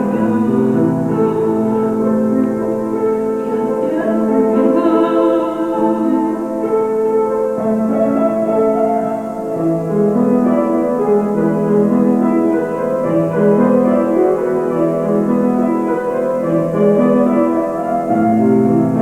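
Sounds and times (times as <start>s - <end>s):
slow instrumental keyboard music: 0.0s - 19.0s.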